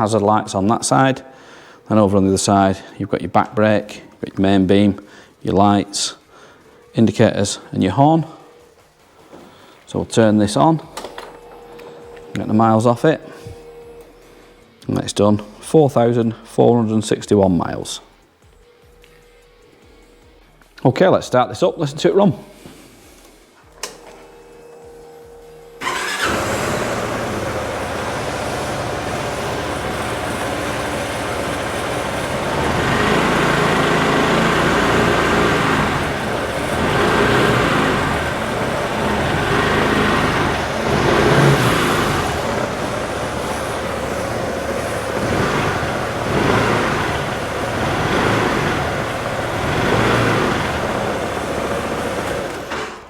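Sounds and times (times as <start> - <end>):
scooter engine idling and revving: 25.3 - 53.0.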